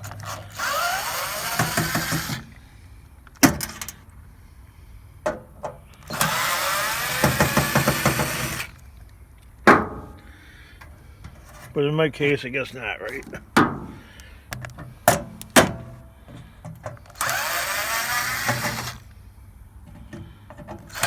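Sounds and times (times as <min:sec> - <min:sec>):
cordless drill whine: 0:00.0 - 0:02.6, 0:06.0 - 0:08.8, 0:17.1 - 0:19.1.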